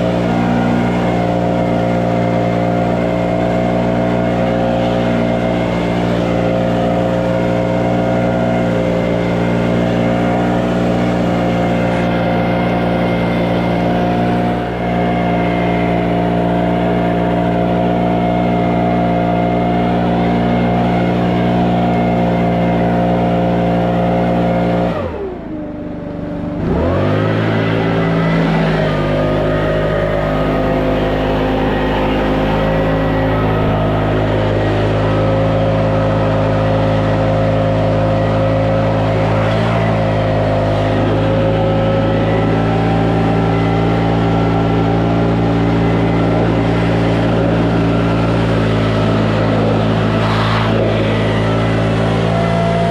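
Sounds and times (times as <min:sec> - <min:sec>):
small engine running: 0:00.0 - 0:52.9.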